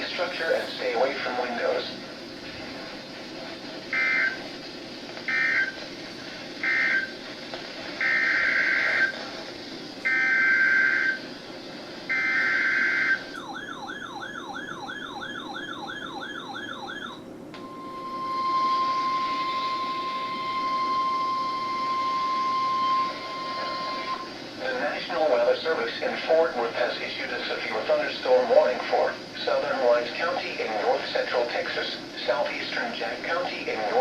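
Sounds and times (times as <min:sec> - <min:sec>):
steady warning alarm tone: 0:03.9 - 0:04.5, 0:05.3 - 0:05.8, 0:06.6 - 0:07.2, 0:08.0 - 0:09.2, 0:10.0 - 0:11.3, 0:12.1 - 0:24.4
warbling siren-like tone: 0:12.2 - 0:24.3.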